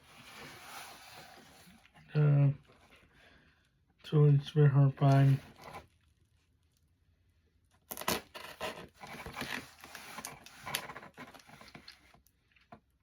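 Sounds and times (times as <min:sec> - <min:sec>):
rustling of package contents: 0:08.0 - 0:12.7.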